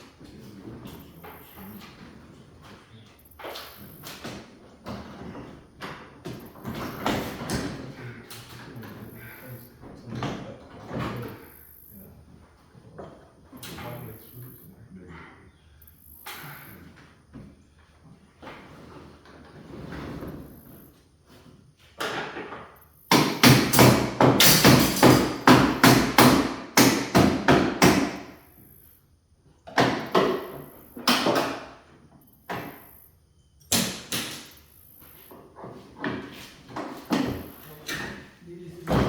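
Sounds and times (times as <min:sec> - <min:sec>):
knocking and clanking on garage door: 0:00.1 - 0:11.5, 0:21.3 - 0:28.5, 0:29.6 - 0:32.9, 0:33.7 - 0:39.0.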